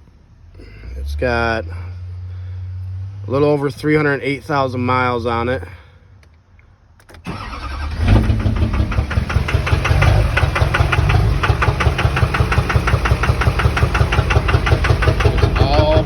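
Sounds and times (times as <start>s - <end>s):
diesel engine idling with knock: 8.1s - 16.0s.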